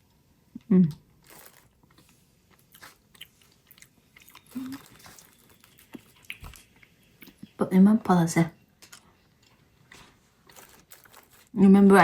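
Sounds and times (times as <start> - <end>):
person chewing crunchy food: 1.1 - 7.5, 8.8 - 11.6.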